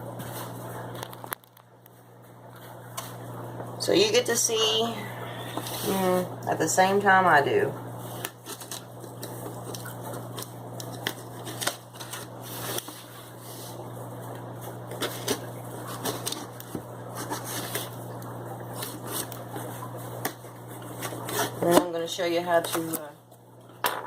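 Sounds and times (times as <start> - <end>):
steady low hum: 0.0 - 24.0
box and packing rustling: 8.4 - 13.2, 14.9 - 18.0.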